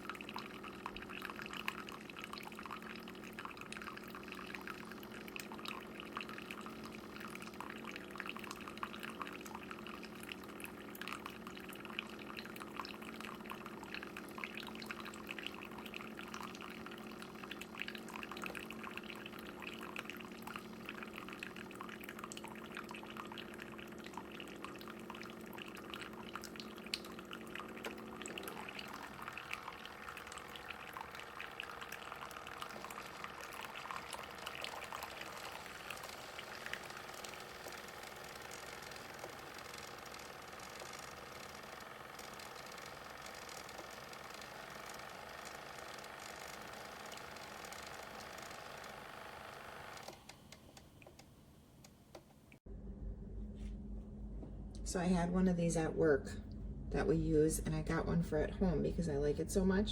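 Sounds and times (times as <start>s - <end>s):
coffee pouring and dripping: 0.0s - 50.2s
low hum: 52.6s - 59.9s.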